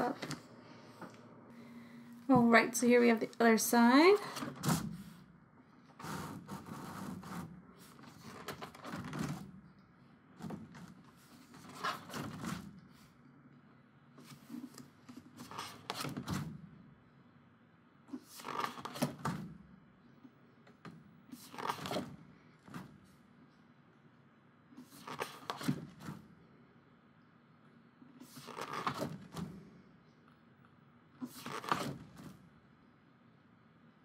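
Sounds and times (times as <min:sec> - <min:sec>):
paper pages rustling: 0:06.0 - 0:09.3, 0:10.8 - 0:12.7, 0:14.2 - 0:16.2, 0:18.4 - 0:19.2, 0:21.4 - 0:22.1, 0:24.9 - 0:25.8, 0:28.3 - 0:29.3, 0:31.2 - 0:32.3.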